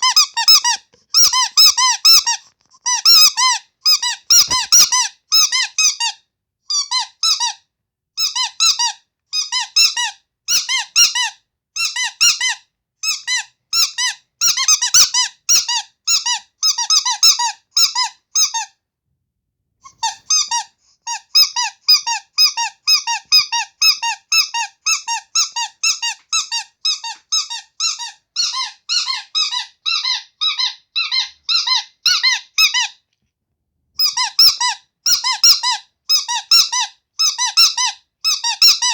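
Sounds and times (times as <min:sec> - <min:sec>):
squeaky toy squeaking: 0:00.0 - 0:18.8, 0:19.8 - 0:33.0, 0:34.0 - 0:38.9.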